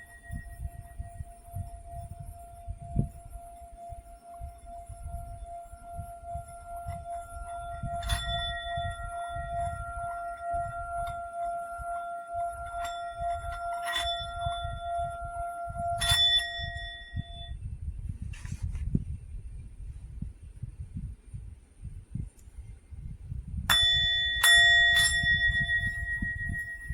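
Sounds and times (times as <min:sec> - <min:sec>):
singing bowl ringing: 0:00.0 - 0:17.6, 0:23.7 - 0:26.9
mallet striking singing bowl: 0:06.1 - 0:17.6, 0:23.7 - 0:26.9.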